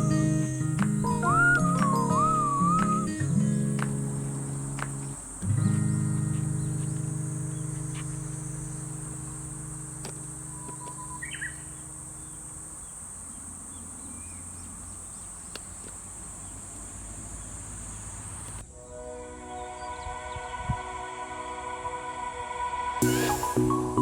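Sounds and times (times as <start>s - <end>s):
music: 0.0s - 8.3s, 18.7s - 24.0s
held music chord: 0.0s - 12.8s, 18.7s - 24.0s
insects shrilling: 0.0s - 18.7s, 23.0s - 24.0s
bird chirp: 0.0s - 19.0s.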